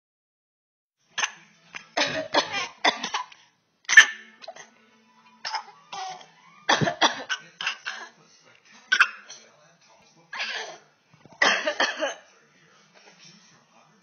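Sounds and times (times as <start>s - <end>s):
baby imitating a cough: 2.0s - 4.7s, 5.4s - 8.1s, 8.9s - 9.4s, 11.4s - 12.2s
woman coughing: 2.0s - 4.7s, 5.4s - 8.1s, 8.9s - 9.4s, 11.4s - 12.2s.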